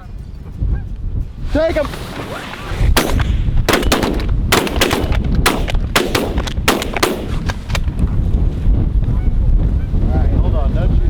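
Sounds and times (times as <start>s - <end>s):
wind rumble on microphone: 0.0s - 11.0s
shotgun shots: 2.8s - 7.9s.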